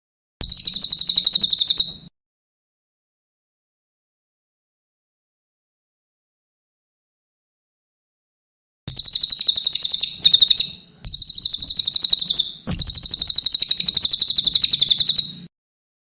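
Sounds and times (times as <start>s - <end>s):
songbird rattling trills: 8.9s - 15.4s.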